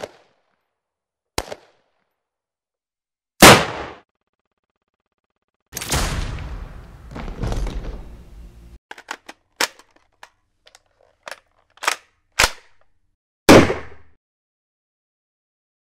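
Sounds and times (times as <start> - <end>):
gunshot with echoing tail: 3.4 - 4.0, 13.5 - 14.1
loud pistol shot: 3.4 - 4.0, 13.5 - 14.1
short sharp cracks and clicks: 8.9 - 12.9.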